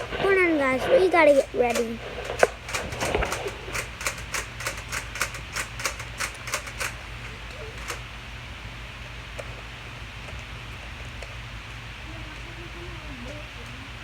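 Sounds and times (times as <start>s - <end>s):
sharp plastic clicks: 1.2s - 8.0s.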